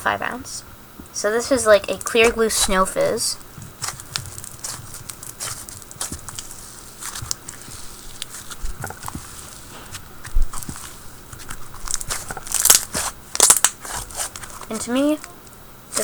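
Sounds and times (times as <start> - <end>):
slime squished by hand: 3.6 - 16.0.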